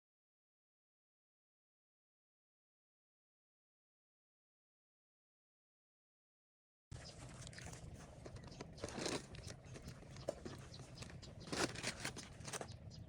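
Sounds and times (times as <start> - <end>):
crunching and crinkling: 7.0 - 13.0.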